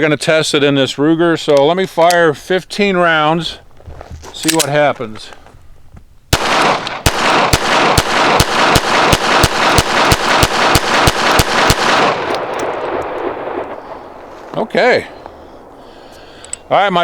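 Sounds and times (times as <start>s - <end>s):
pistol shots with echoes: 6.3s - 14.3s.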